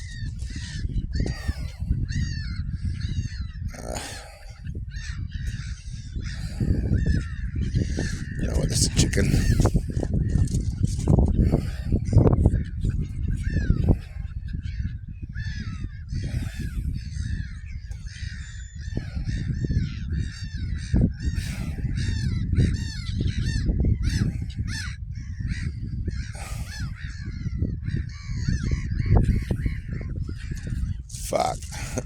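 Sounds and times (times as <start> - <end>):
gulls calling: 0.0 - 10.8, 15.4 - 32.0
steady low rumble: 0.0 - 14.4.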